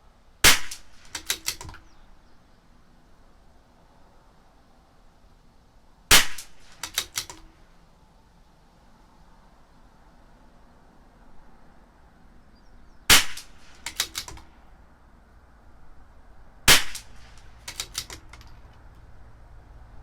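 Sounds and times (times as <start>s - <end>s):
rifle shots: 0.4s - 2.0s, 6.1s - 7.5s, 13.1s - 14.6s, 16.7s - 18.6s
rifle bolt clicks: 0.5s - 2.0s, 6.2s - 7.6s, 13.2s - 14.5s, 16.7s - 19.0s.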